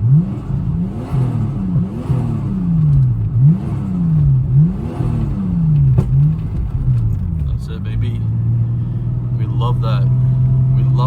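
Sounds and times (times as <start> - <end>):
car engine revving in blips: 0.0 - 11.0
sharp exhaust pop: 5.2 - 7.6.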